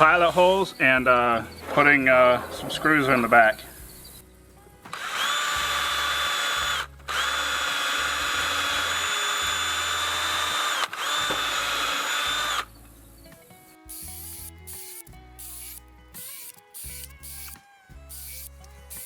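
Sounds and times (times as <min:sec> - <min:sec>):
power drill whining: 0:05.0 - 0:12.8, 0:13.9 - 0:19.0.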